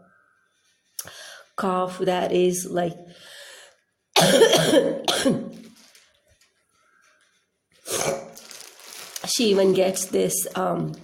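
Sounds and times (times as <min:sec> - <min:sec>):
woman coughing: 0:04.2 - 0:05.5.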